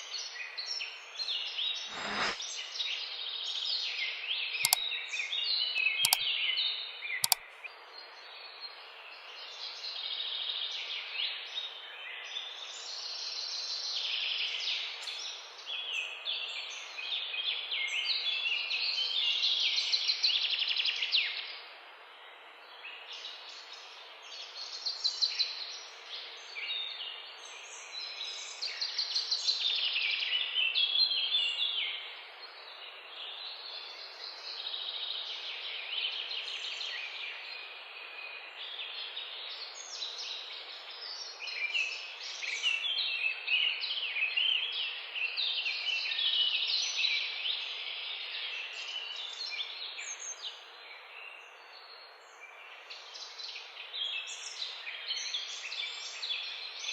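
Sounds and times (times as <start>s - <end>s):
steady hiss: 1.8s - 2.6s
bird-like chirping and twittering: 4.4s - 7.8s.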